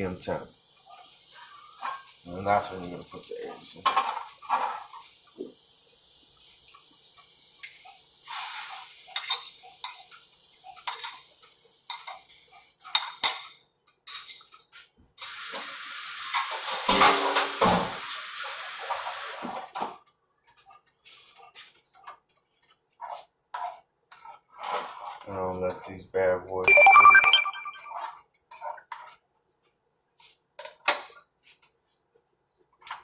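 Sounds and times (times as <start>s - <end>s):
steady hiss: 5.0s - 9.2s.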